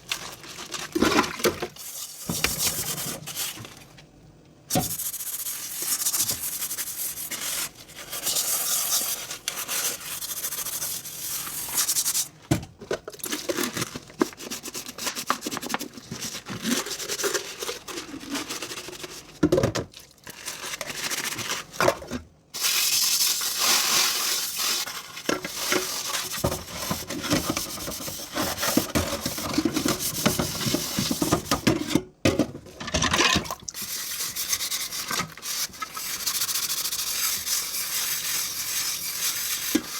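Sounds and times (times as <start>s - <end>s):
dishes being scrubbed: 4.8s - 12.3s, 14.2s - 19.4s, 22.6s - 32.0s, 33.1s - 39.9s.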